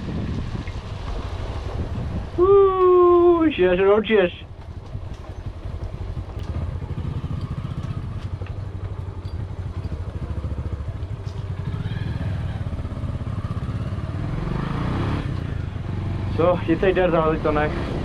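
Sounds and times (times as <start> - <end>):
motorcycle engine puttering: 4.5 - 14.0.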